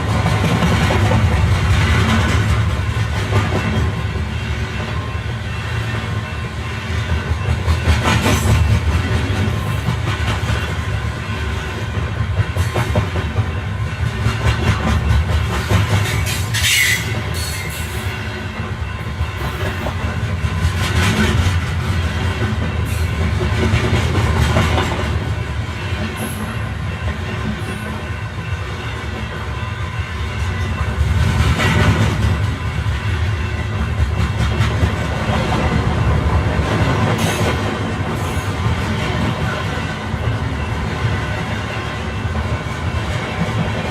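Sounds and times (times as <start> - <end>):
train rumbling: 0.0 - 43.9
high wheel squeal: 16.2 - 18.1.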